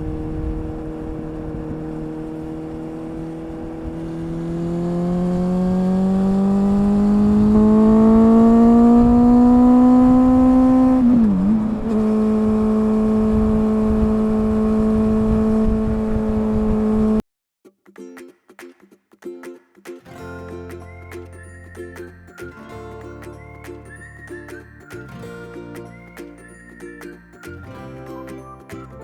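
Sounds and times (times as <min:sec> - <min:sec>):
motorcycle exhaust note: 0:00.0 - 0:17.2.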